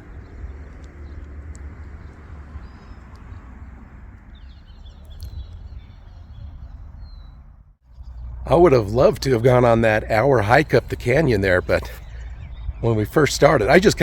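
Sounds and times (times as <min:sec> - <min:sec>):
wind buffeting microphone: 0:00.0 - 0:14.0
faint bird chirps: 0:04.3 - 0:10.1, 0:10.8 - 0:13.5.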